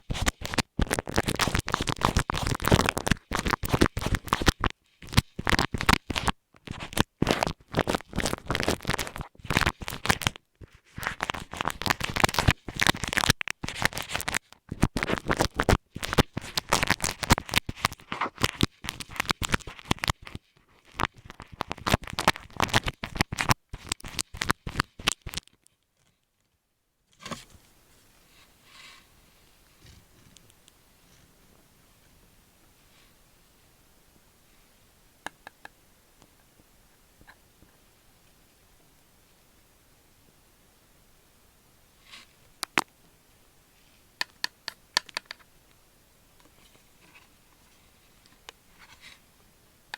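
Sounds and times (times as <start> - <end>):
scratching on earphone microphone: 0.0 - 25.6, 27.2 - 32.1.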